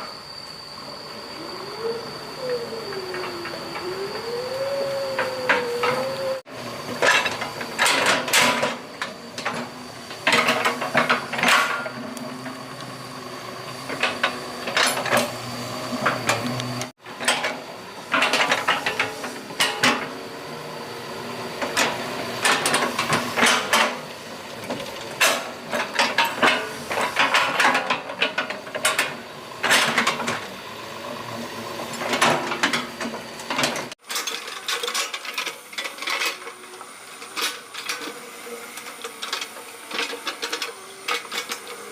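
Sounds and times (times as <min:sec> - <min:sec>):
excavator engine running: 0:00.0 - 0:28.0.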